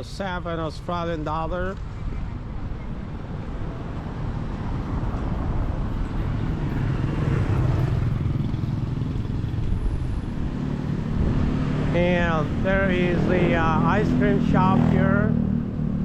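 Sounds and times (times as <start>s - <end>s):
vehicle engine passing: 3.0s - 16.0s.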